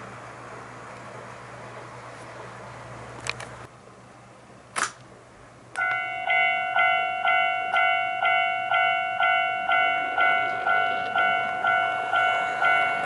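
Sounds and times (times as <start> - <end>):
electronic level crossing bell: 5.8 - 13.0.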